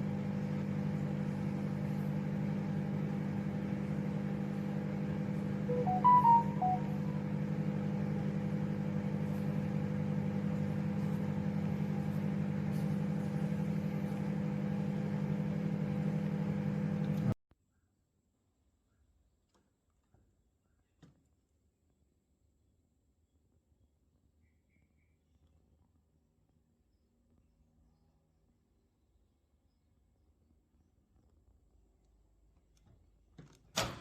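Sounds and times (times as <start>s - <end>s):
microwave oven humming: 0.0s - 17.4s
microwave short beeps: 5.6s - 7.5s.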